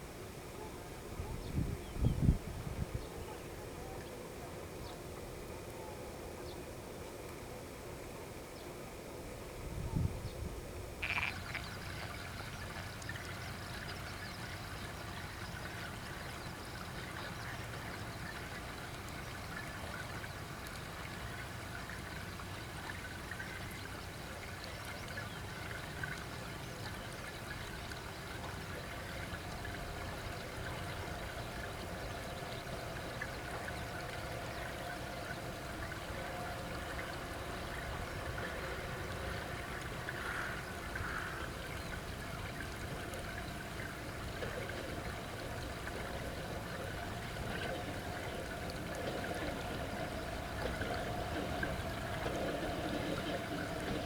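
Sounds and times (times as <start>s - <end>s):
flowing water rushing: 11.0s - 54.0s.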